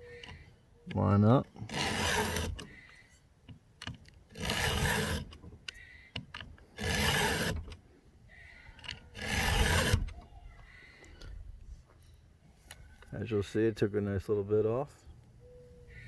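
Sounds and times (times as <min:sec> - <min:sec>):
file rasping on chainsaw chain: 0:01.6 - 0:02.8, 0:04.3 - 0:05.4, 0:06.8 - 0:07.7, 0:09.1 - 0:10.1.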